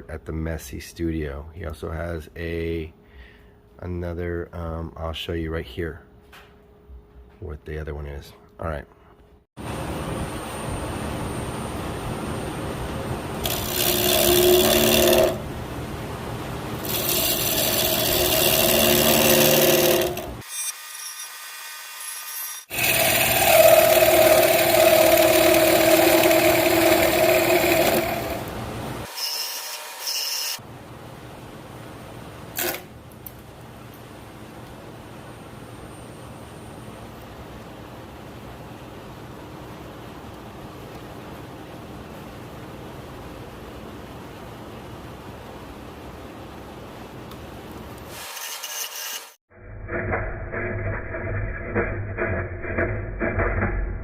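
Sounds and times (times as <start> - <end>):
turning tool cutting wood: 13.4 - 15.5, 16.8 - 30.6, 32.6 - 32.9, 48.1 - 53.7
wood lathe turning: 13.4 - 15.5, 16.8 - 30.6, 32.6 - 32.8.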